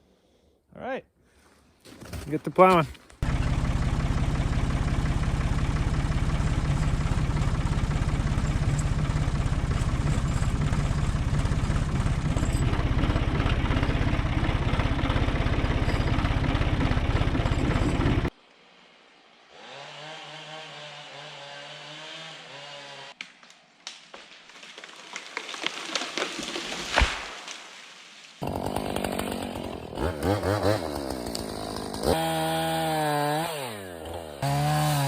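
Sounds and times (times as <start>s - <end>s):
tractor engine running: 2.6s - 18.3s.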